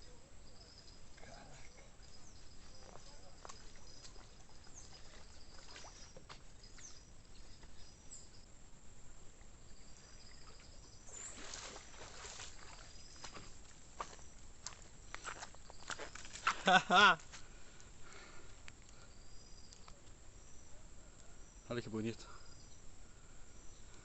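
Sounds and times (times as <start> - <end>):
water splashing: 2.7 - 6.9, 10.2 - 13.7.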